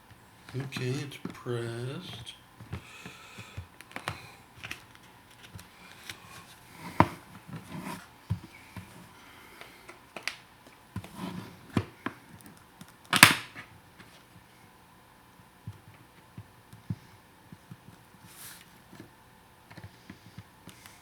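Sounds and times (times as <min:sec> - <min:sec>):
hard plastic clicking and creaking: 0:03.4 - 0:06.2
plastic snapping: 0:03.4 - 0:06.2, 0:12.4 - 0:13.7.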